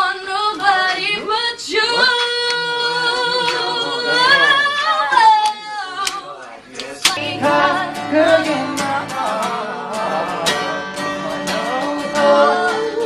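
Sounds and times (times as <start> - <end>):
person singing: 7.0 - 13.0.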